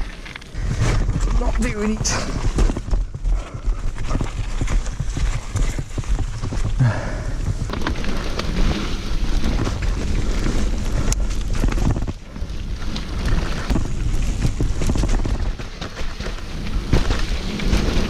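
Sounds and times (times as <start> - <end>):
bike rattling and clattering: 0.0 - 18.0.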